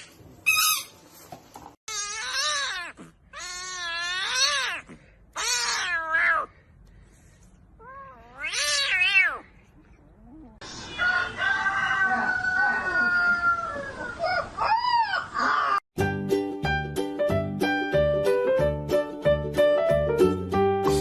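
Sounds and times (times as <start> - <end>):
cat yowling: 1.9 - 6.5, 7.8 - 9.5.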